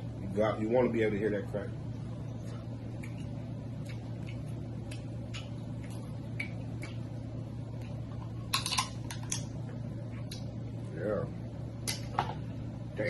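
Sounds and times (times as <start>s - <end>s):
crab shells cracking by hand: 7.7s - 9.5s.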